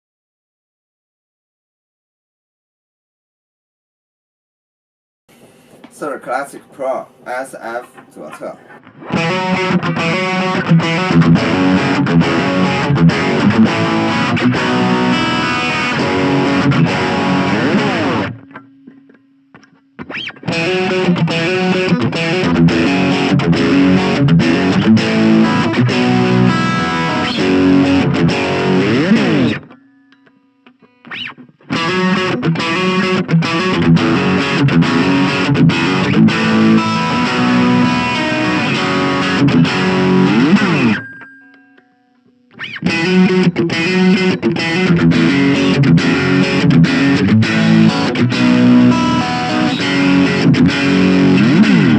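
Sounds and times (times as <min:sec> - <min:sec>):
distorted electric guitar riffing: 0:06.7 - 0:41.1, 0:42.4 - 0:51.9.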